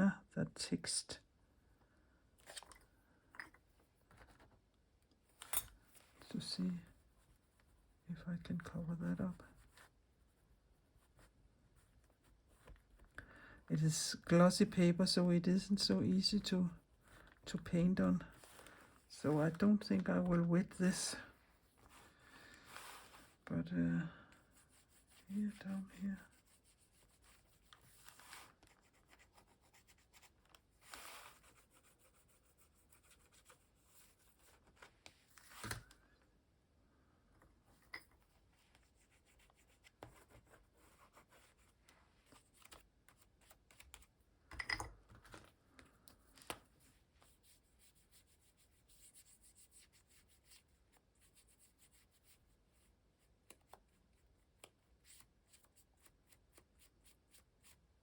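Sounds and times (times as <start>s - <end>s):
crayon scratching on paper: 24.4s - 34.6s.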